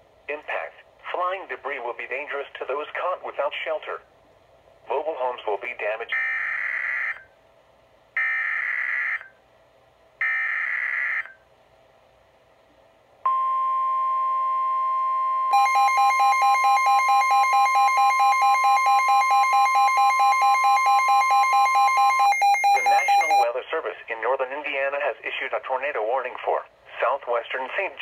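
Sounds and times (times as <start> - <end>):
pulsing radio alarm: 6.1 - 7.3, 8.2 - 9.3, 10.2 - 11.4, 13.3 - 23.5
steady warning alert tone: 13.3 - 23.5.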